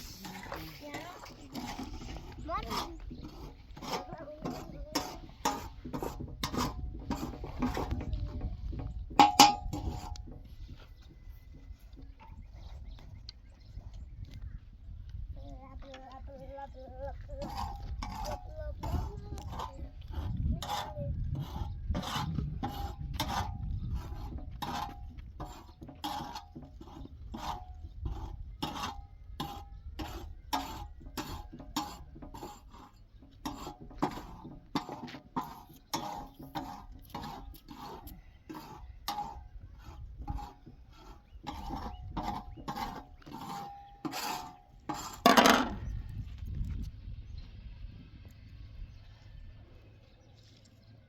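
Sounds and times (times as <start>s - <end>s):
rhythmic scraping strokes: 0.0s - 10.8s, 17.0s - 45.8s.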